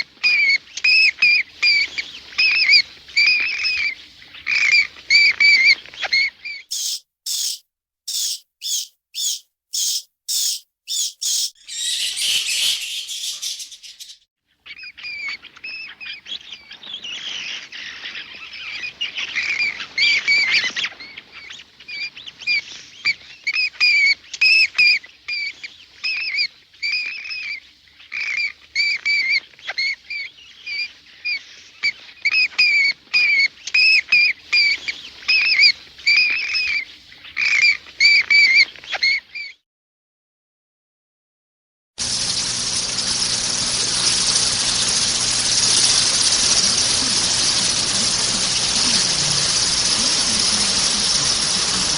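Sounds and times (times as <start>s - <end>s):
bats squeaking and chattering: 6.7s - 14.2s, 43.4s - 51.9s
short hissy burst: 6.7s - 14.2s.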